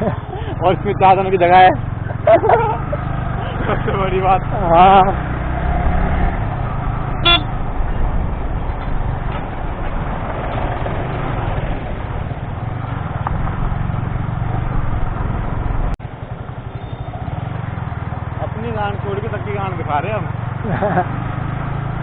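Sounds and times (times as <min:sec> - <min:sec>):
motorcycle engine rumbling: 0:00.0 - 0:22.0
vehicle horn toot: 0:07.2 - 0:07.6.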